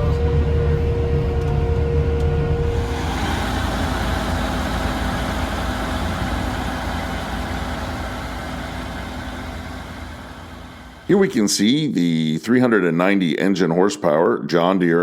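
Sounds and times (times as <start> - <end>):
diesel harvest machinery running: 0.0 - 11.6.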